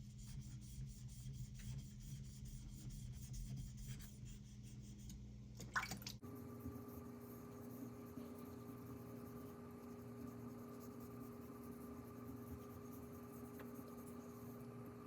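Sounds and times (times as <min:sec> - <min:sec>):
steady low hum: 0:06.2 - 0:15.0.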